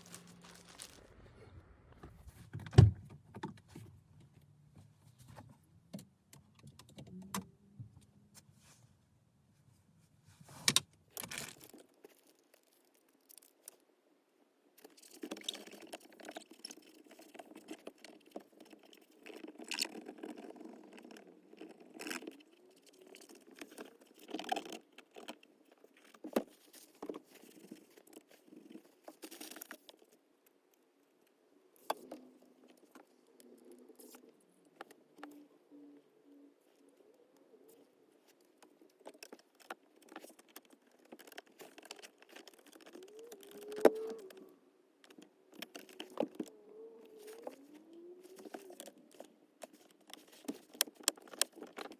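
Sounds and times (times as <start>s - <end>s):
plastic scraping and rustling: 0.0s - 3.9s, 15.0s - 30.1s, 37.7s - 51.9s.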